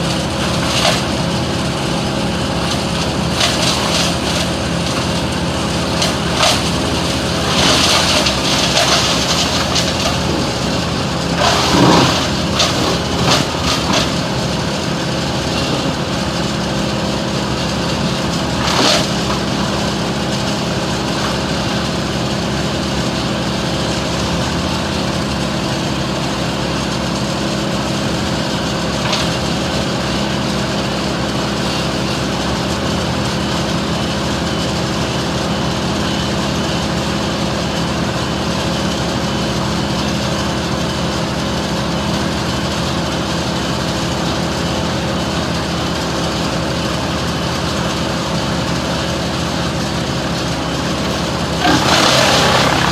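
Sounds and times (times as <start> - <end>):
engine running steadily: 0.0 - 52.9
short loud noises: 51.6 - 52.9.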